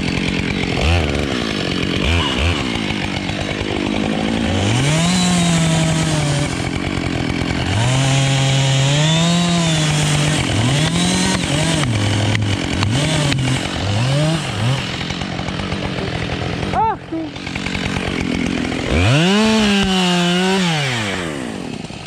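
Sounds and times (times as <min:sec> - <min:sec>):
chainsaw revving: 0:00.0 - 0:22.0.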